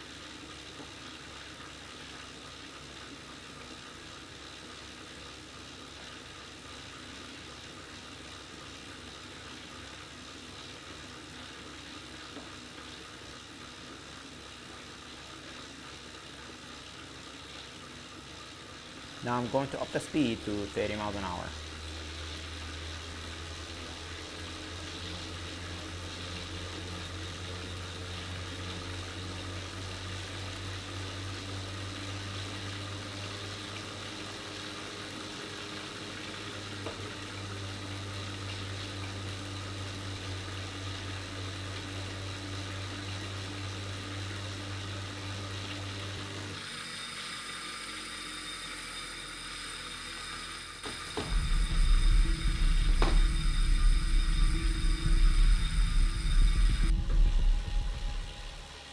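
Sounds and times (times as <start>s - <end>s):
bike drivetrain whir: 18.2s - 58.9s
flywheel low hum: 18.8s - 27.3s, 46.1s - 58.9s.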